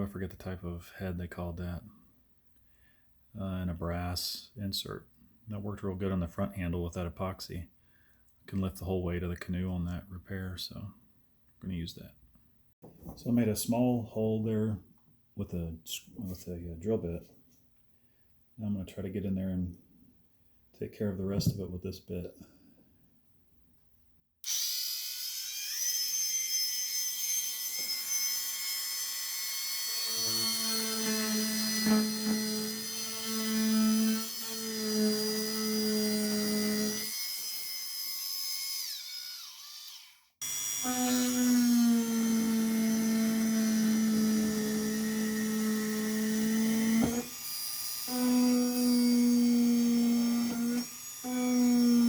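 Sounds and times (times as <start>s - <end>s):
rotary tool whining: 24.4s - 52.0s.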